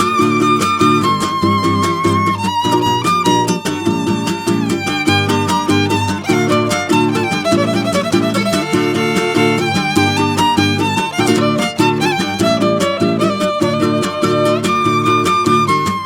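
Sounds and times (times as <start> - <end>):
upbeat violin-led music: 0.0 - 16.0.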